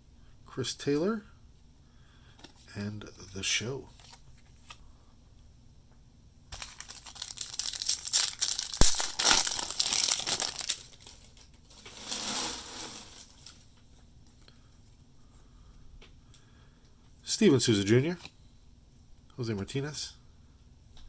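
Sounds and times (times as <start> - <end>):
foil wrapper crinkling: 6.5 - 13.7.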